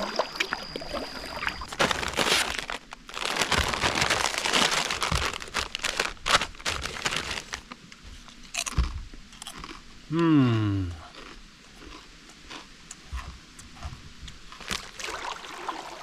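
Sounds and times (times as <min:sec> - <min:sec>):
plastic chip bag crinkling: 0:00.0 - 0:08.8.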